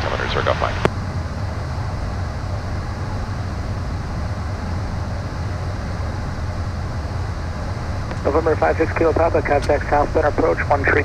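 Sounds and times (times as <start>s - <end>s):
jet engine low rumble: 0.0s - 11.0s.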